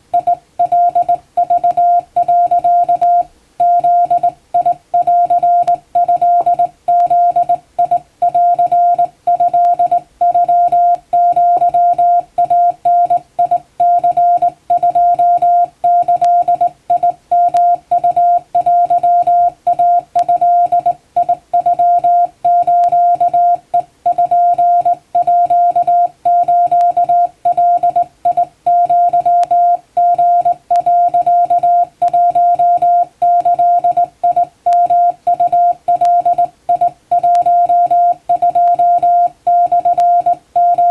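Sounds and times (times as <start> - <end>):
morse code beeps: 0.1 - 40.9.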